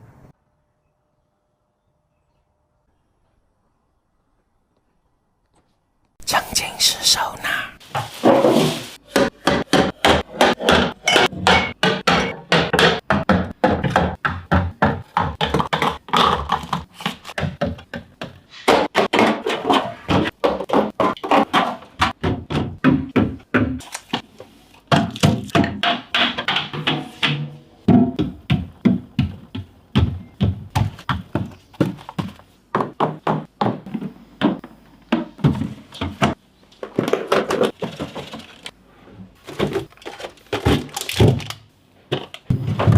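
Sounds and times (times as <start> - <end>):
containers knocking and clattering: 8.0 - 24.2, 24.9 - 38.7, 39.4 - 42.9.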